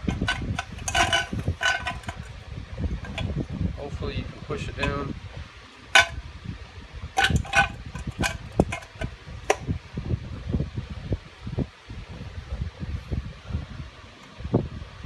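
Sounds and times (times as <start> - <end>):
metal clicks and knocks: 0.0 - 2.3, 3.0 - 3.3, 5.9 - 6.2, 7.2 - 9.6
low bumping handling noise: 0.0 - 6.3.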